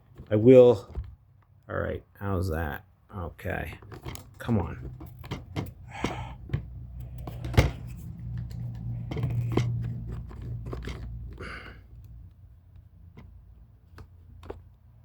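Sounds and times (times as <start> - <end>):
clicks and scraping on wood: 3.6 - 15.0.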